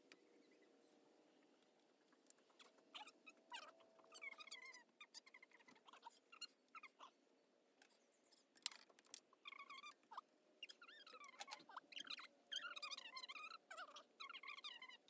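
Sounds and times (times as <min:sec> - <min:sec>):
high squeaky animal calls: 0:02.5 - 0:07.1, 0:09.4 - 0:15.0.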